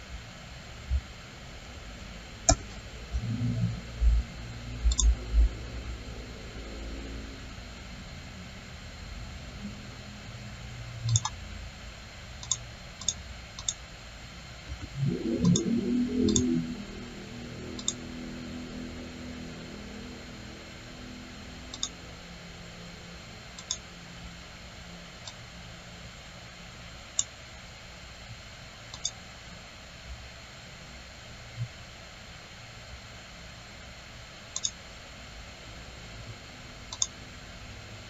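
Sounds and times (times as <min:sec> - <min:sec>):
loud low noise: 0:00.6 - 0:12.9, 0:13.9 - 0:27.0
computer mouse clicking: 0:04.9 - 0:05.2, 0:11.0 - 0:11.4, 0:12.4 - 0:13.8, 0:15.4 - 0:16.6, 0:17.8 - 0:18.0, 0:21.7 - 0:22.0, 0:23.6 - 0:23.8, 0:28.9 - 0:29.2, 0:34.5 - 0:34.8, 0:36.9 - 0:37.2.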